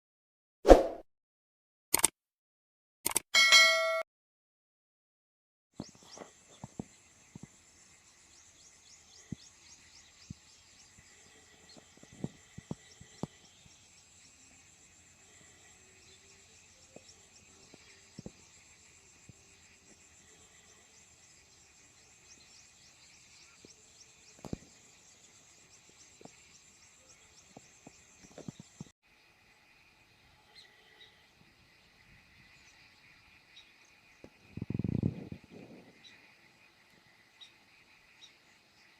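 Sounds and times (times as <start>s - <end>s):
sharp clicks and ticks: 1.9s - 2.2s, 3.1s - 3.3s
insects chirring: 5.8s - 38.9s.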